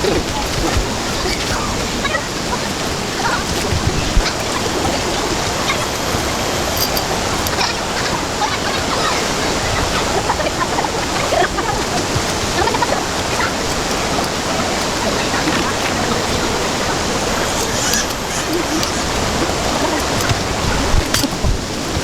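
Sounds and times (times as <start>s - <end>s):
river water rushing: 0.0s - 22.0s
short faint calls: 12.6s - 20.9s.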